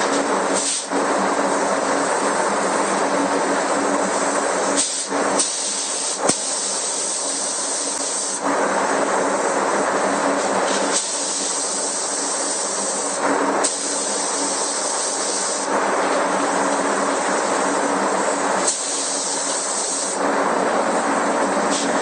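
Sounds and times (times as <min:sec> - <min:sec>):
steady low hum: 0:00.0 - 0:22.0
paint spray gun hissing: 0:04.8 - 0:08.4, 0:10.8 - 0:15.7, 0:18.6 - 0:20.2.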